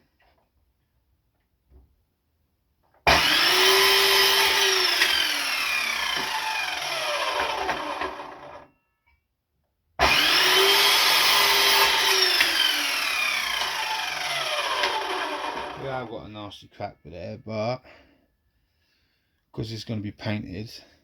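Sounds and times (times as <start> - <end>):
power saw cutting wood: 3.1 - 8.7, 10.0 - 16.1.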